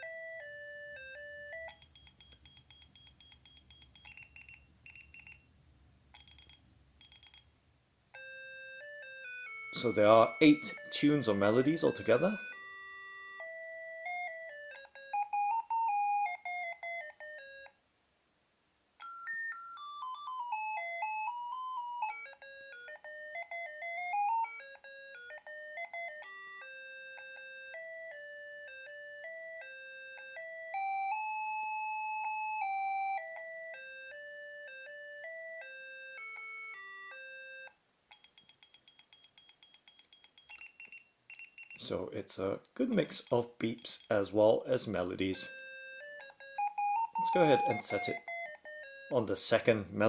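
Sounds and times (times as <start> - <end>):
alarm clock chiming melodies: 0.0 - 2.1, 8.2 - 17.7, 19.0 - 37.7, 43.0 - 49.7.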